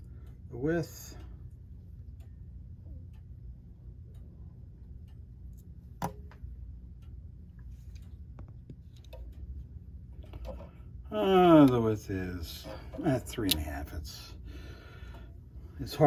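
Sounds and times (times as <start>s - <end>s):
low steady hum: 0.0s - 16.0s
small clicks and taps: 5.1s - 10.8s.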